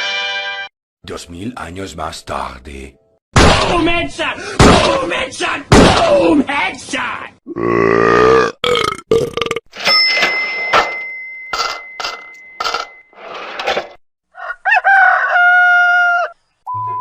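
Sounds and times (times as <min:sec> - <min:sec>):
burp: 0:07.4 - 0:09.7.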